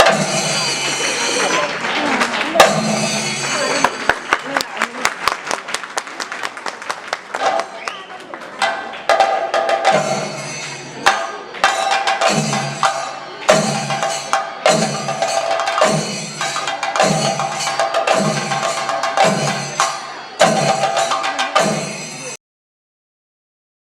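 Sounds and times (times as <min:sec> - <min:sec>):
drums beaten with sticks: 0:00.0 - 0:01.5, 0:02.4 - 0:04.0, 0:08.6 - 0:22.4
hand cymbals ringing: 0:00.0 - 0:01.7, 0:02.6 - 0:04.1, 0:09.9 - 0:22.4.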